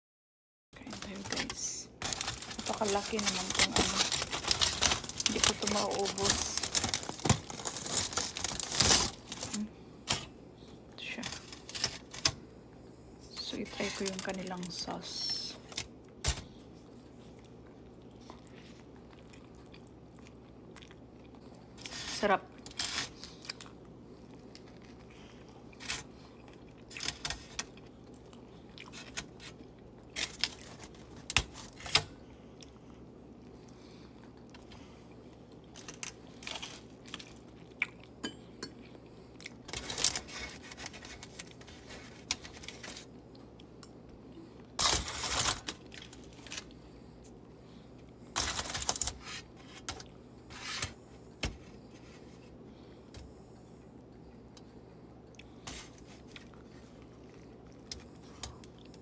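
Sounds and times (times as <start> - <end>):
chewing and crunching: 15.6 - 50.2, 52.8 - 59.0.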